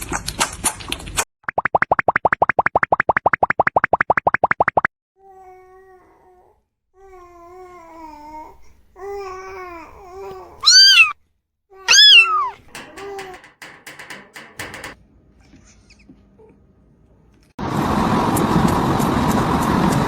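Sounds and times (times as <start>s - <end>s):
kittens mewing: 10.5s - 11.2s, 11.8s - 16.6s
sharp clicks: 11.9s - 15.0s.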